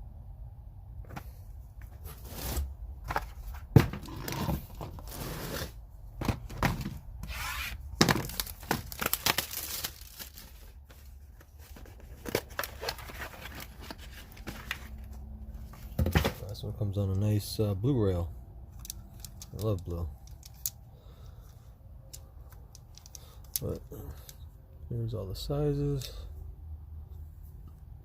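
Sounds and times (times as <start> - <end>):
packaging tearing and crinkling: 8.0 - 10.9.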